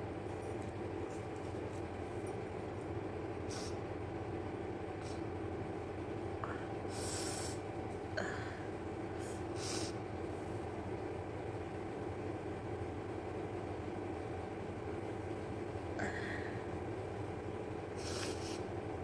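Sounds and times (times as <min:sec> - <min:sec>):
steady hum: 0:00.0 - 0:19.0
person sniffing and snorting: 0:03.5 - 0:03.8, 0:06.9 - 0:07.6, 0:09.6 - 0:10.0, 0:18.0 - 0:18.7.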